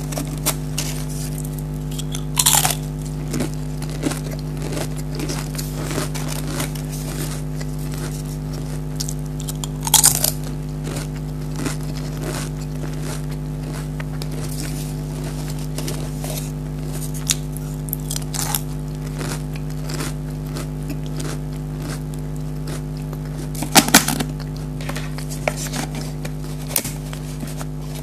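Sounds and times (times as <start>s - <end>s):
crisps crunching in mouth: 0.0s - 28.0s
steady low hum: 0.0s - 28.0s.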